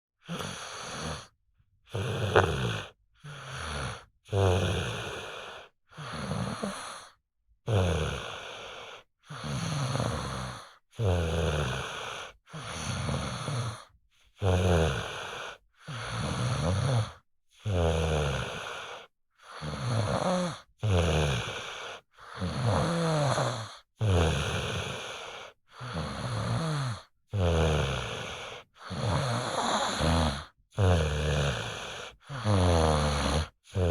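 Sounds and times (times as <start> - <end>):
person snoring: 0.2 - 1.3, 1.9 - 33.9.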